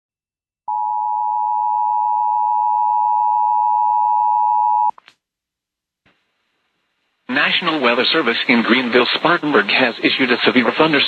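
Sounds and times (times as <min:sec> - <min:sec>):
two-tone alarm signal: 0:00.7 - 0:04.9.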